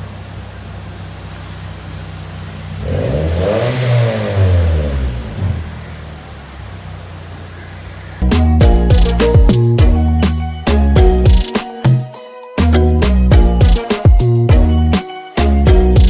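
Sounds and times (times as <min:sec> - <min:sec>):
car engine idling and revving: 0:00.0 - 0:11.5.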